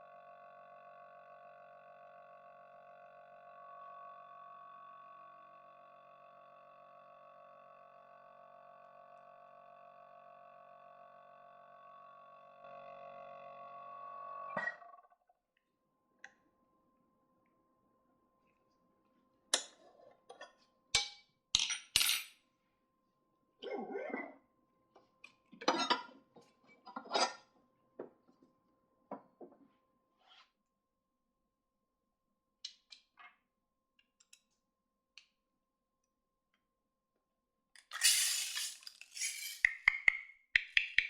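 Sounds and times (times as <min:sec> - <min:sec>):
small hard objects clinking: 0:37.8 - 0:39.8.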